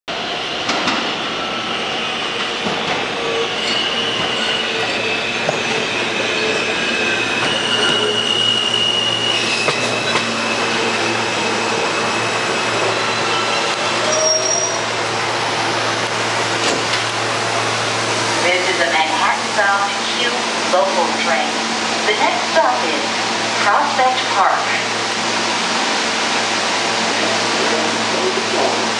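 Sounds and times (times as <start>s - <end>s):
train rumble and hum: 0.1s - 28.9s
train wheels squealing on rails: 0.2s - 15.0s.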